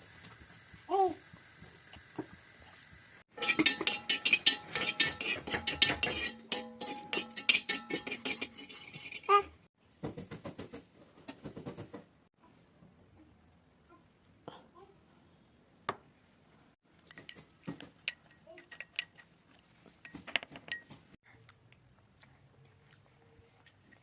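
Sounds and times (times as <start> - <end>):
utensil clinking against vessel: 3.3 - 9.5, 17.1 - 19.4.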